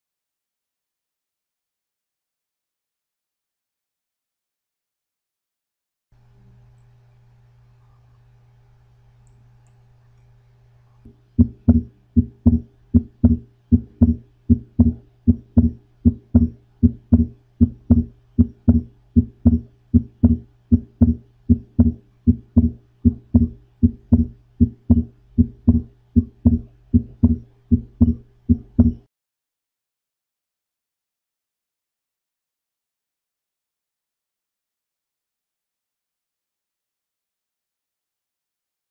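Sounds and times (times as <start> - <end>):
steady low hum: 6.2 - 29.1
heartbeat thuds: 11.4 - 29.1.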